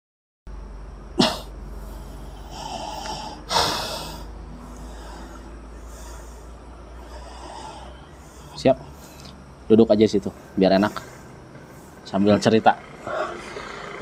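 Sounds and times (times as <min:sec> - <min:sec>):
forceful bursts of breath: 0:01.7 - 0:12.2.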